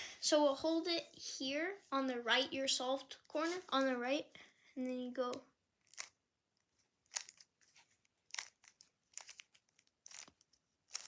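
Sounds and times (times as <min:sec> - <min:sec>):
plastic puzzle cube clicking: 0:05.8 - 0:06.2, 0:07.1 - 0:07.5, 0:08.3 - 0:11.0.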